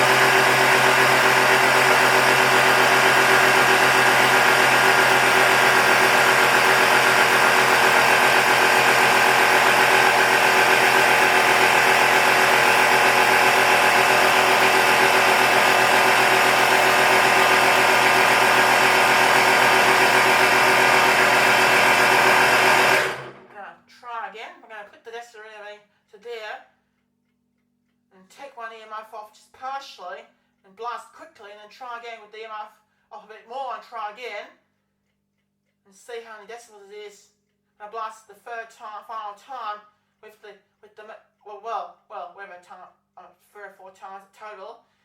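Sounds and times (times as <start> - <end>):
electric air compressor running: 0.0 - 23.5.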